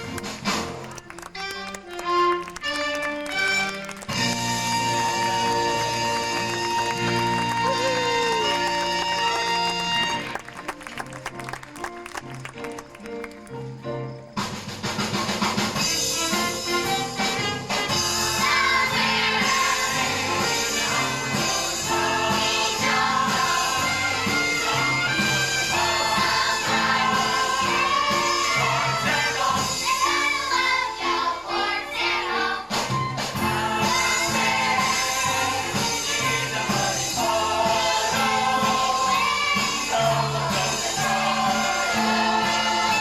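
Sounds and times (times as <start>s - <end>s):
band accompaniment: 0.0s - 43.0s
group of voices singing: 16.3s - 43.0s.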